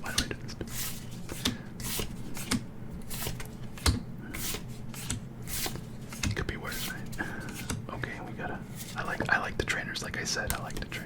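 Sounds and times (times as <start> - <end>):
cards sliding with soft swish: 0.6 - 7.8, 8.6 - 9.2.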